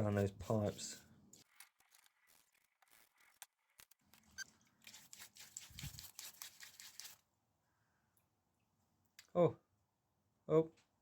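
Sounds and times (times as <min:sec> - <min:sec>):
scratchy crackly rustle: 0:00.0 - 0:07.2.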